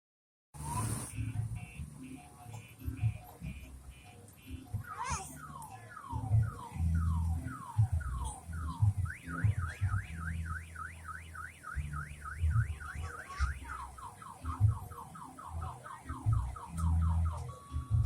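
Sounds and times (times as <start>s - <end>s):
car alarm siren: 0.6s - 18.0s
low thuds: 6.0s - 10.8s.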